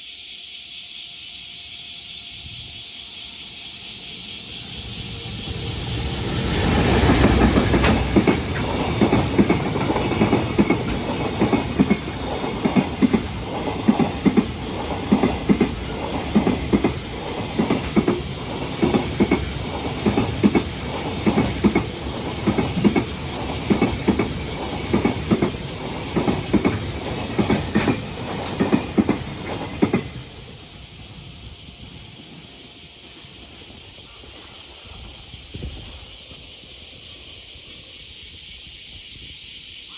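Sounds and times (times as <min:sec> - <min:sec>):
locomotive hiss: 0:00.0 - 0:39.9
wheels clacking over rail joints: 0:05.3 - 0:30.5.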